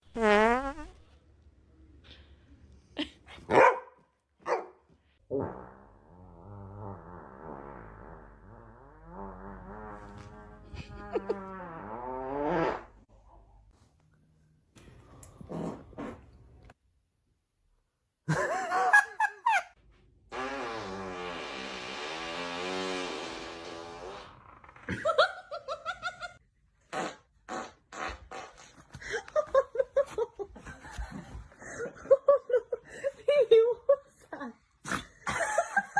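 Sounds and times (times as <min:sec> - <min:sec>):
drawn-out fart: 0:00.0 - 0:01.0, 0:05.3 - 0:13.1, 0:15.5 - 0:16.3, 0:20.3 - 0:25.5, 0:26.8 - 0:28.9
dog barking: 0:03.5 - 0:04.8
person laughing: 0:10.6 - 0:11.5, 0:18.3 - 0:19.7, 0:28.9 - 0:35.9.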